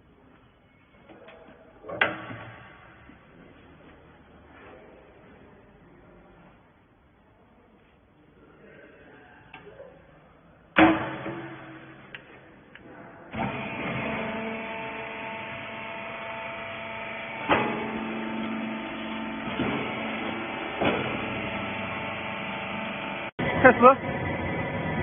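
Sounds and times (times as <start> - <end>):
loud metal clank: 10.8 - 12.2
motor and hydraulic pump humming: 13.3 - 25.0.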